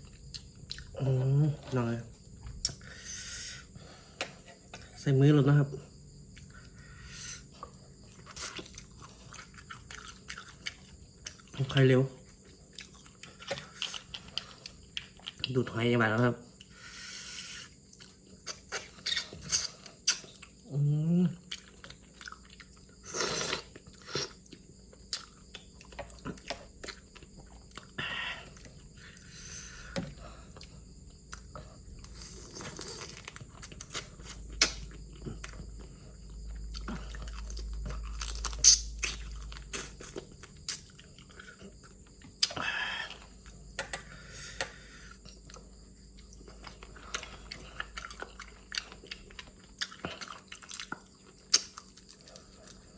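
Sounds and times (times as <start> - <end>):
wet slurps and smacks: 18.0 - 20.3
shellfish sucked and chewed: 18.4 - 20.4, 23.0 - 24.8.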